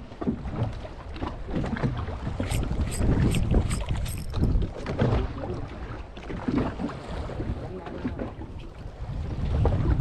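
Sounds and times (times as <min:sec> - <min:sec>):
small boat at sea: 0:00.0 - 0:10.0
sharp clicks: 0:02.4 - 0:04.6
wind buffeting microphone: 0:08.7 - 0:10.0.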